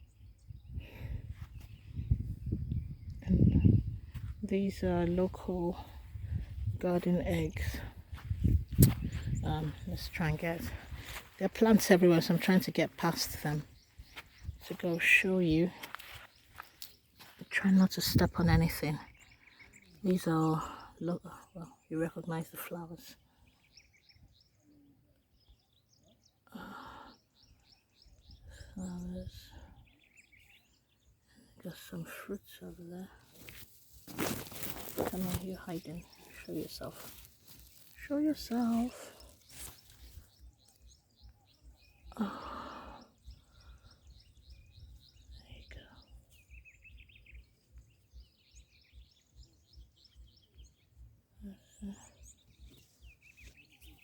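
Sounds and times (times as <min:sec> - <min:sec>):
small birds chirping: 0:00.0 - 0:54.0
rustling noise: 0:33.3 - 0:40.3.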